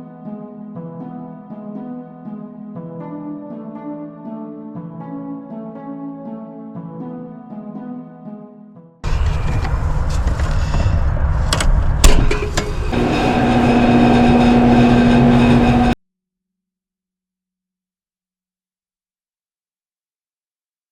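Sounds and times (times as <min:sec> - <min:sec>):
air conditioner unit rumbling: 0:09.1 - 0:16.0
steady hum: 0:09.1 - 0:16.0.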